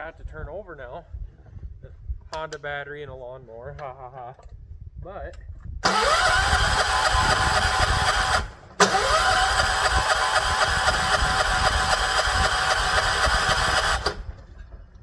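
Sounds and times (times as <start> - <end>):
electric starter cranking engine: 5.8 - 14.5.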